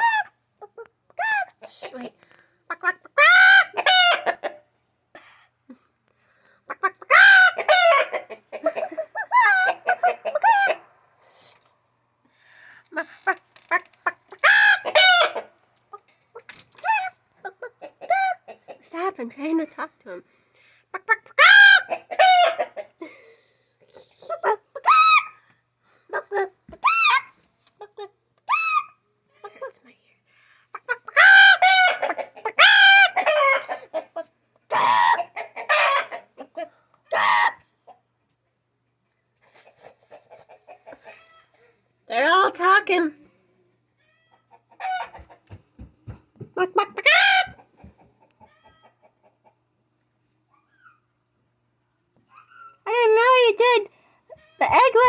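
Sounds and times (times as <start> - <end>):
rooster clucking and bawking: 2.7 - 4.7, 6.7 - 11.0, 13.7 - 15.6, 16.8 - 18.8, 21.0 - 23.0, 30.8 - 38.0, 39.5 - 41.6, 44.3 - 45.6, 46.8 - 49.6.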